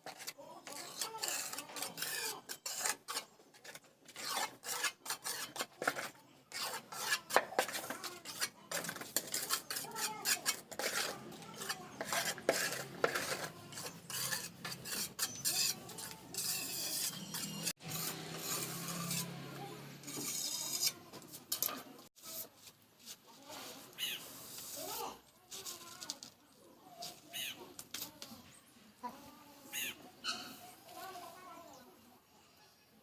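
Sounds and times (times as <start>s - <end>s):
trowel scraping mortar on stone: 0.0s - 26.4s.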